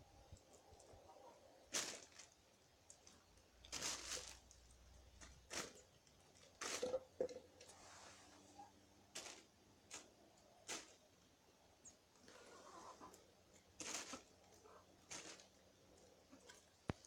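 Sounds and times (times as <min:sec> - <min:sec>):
chickens pecking wet squash: 0:09.2 - 0:17.0.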